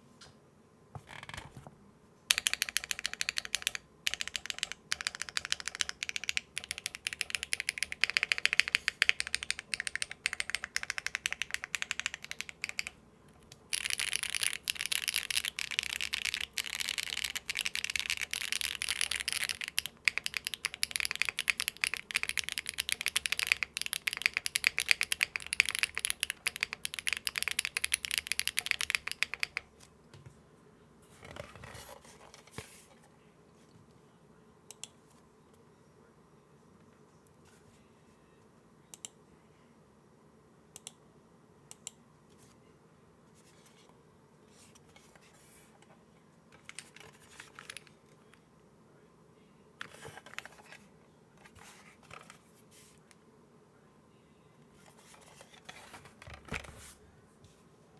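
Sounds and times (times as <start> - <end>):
fast typing on mechanical keyboard: 2.3 - 29.7, 46.6 - 47.9.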